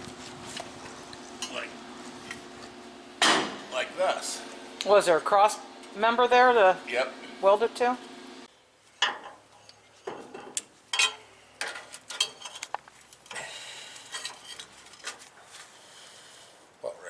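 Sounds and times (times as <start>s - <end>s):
metal parts clinking on steel frame: 10.9s - 13.4s.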